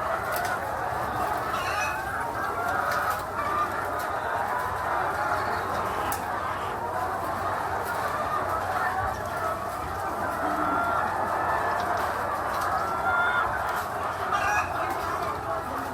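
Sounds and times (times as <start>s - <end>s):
chickens clucking: 0.0s - 15.9s.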